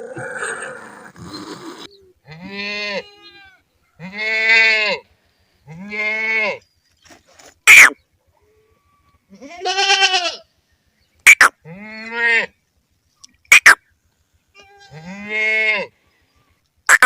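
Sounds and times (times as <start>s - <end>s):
goat bleating: 2.2s - 5.1s, 8.8s - 10.5s, 14.5s - 16.0s.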